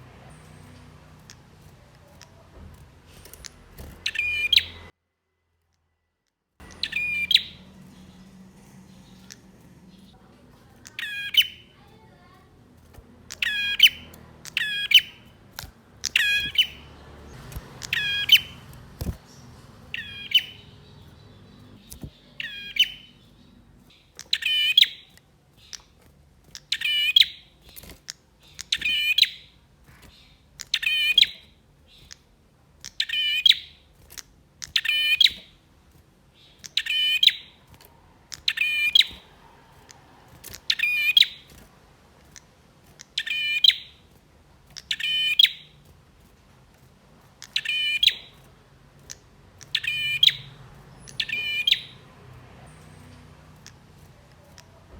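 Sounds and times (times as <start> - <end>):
bird calling high-pitched phrase: 4.0 - 4.9, 6.6 - 12.6, 13.2 - 15.4, 16.0 - 17.0, 17.8 - 18.7, 19.4 - 23.4, 47.4 - 48.4, 49.6 - 52.0.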